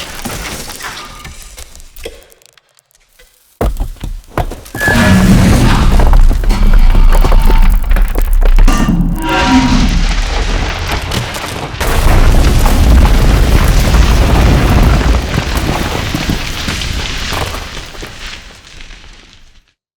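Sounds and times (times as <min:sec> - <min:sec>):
debris rumbling: 0:03.6 - 0:19.6
heavy crash: 0:04.8 - 0:17.7.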